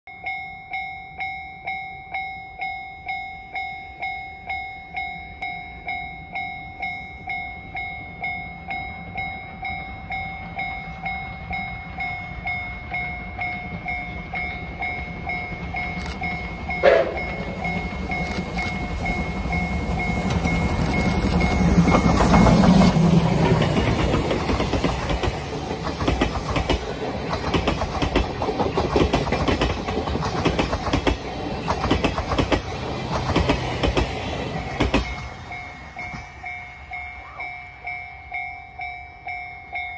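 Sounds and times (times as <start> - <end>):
level crossing alarm clanging: 0.1 - 26.8
train rumbling: 1.2 - 39.9.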